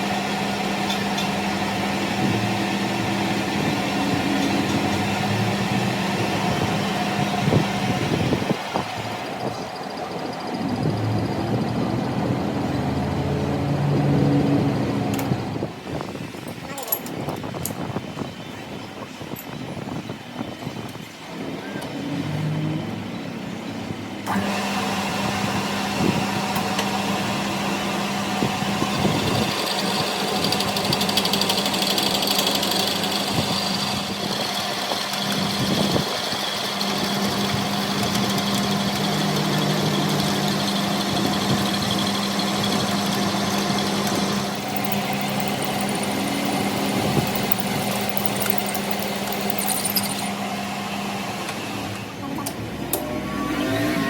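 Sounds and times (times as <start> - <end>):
low machine hum: 42.7 - 51.2.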